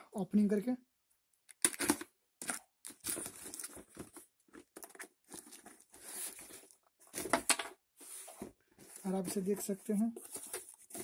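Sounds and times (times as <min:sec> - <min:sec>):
packaging tearing and crinkling: 0:01.5 - 0:06.8.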